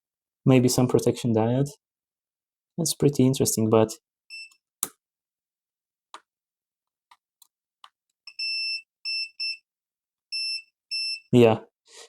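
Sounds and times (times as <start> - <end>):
multimeter continuity beep: 8.3 - 9.6, 10.4 - 11.3.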